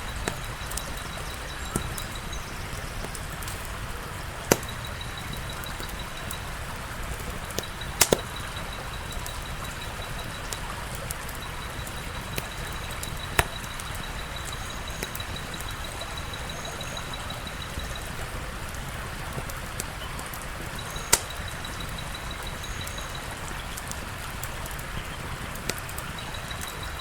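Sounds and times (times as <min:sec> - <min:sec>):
faint steady high tone: 0:00.0 - 0:03.1, 0:04.1 - 0:18.8, 0:20.7 - 0:23.6, 0:26.1 - 0:27.0
wood fire crackling: 0:00.0 - 0:27.0.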